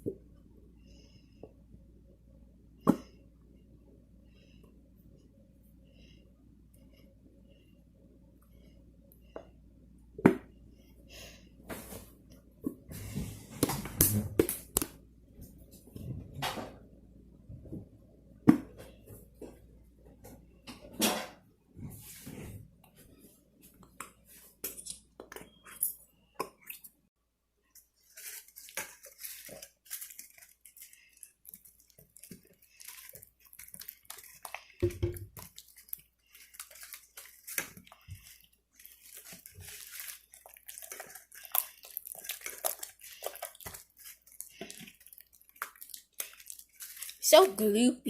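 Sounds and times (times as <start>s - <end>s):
slime squelching in a bowl: 27.8s - 47.8s.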